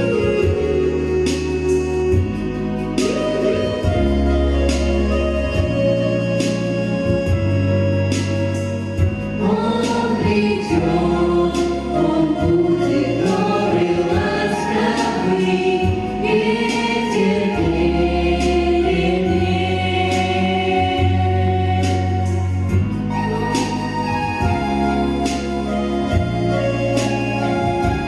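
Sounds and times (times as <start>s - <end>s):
instrumental backing with beat: 0.0s - 28.0s
choir singing: 9.4s - 28.0s.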